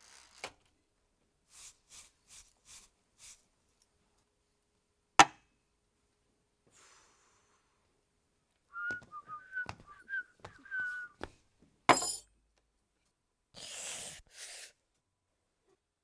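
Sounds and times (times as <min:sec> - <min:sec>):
short whistled notes: 0:08.7 - 0:11.2.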